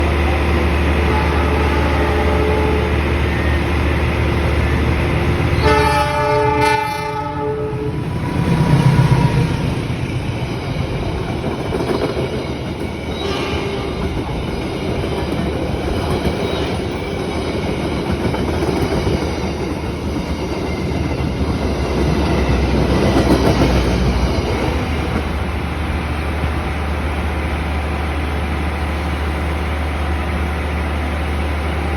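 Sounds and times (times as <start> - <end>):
diesel locomotive rumble: 0.0 - 31.9
train horn blast: 1.0 - 3.1, 5.6 - 8.1, 13.2 - 14.0
train cars clattering over rails: 8.5 - 25.6.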